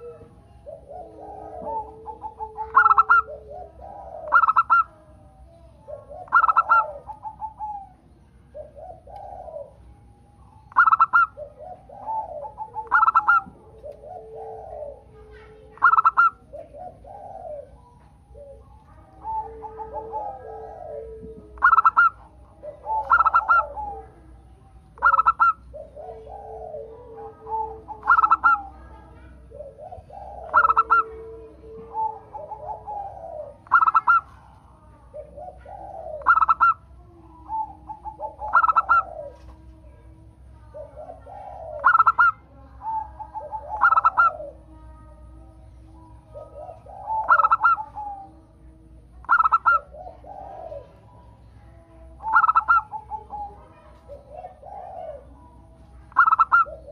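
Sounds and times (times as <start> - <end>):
dove cooing song: 0.0 - 56.9.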